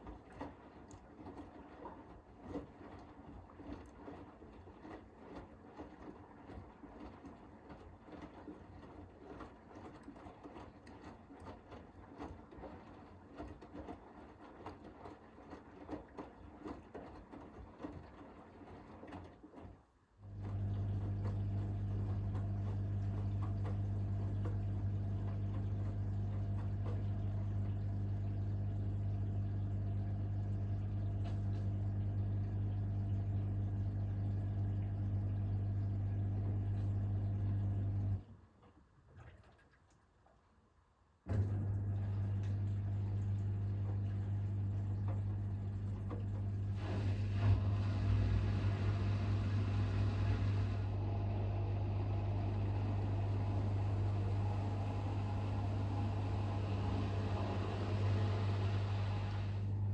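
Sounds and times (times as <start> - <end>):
washing machine clicking and sloshing: 0.0 - 40.7, 41.3 - 59.9
loud steady pump hum: 41.3 - 59.9.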